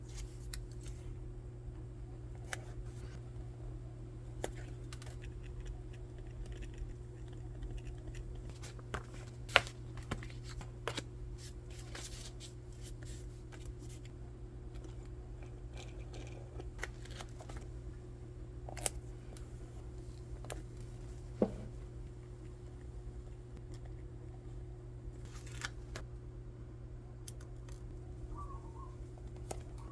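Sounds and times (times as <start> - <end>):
low electrical hum: 0.0 - 29.9
paper rustling: 8.5 - 14.1.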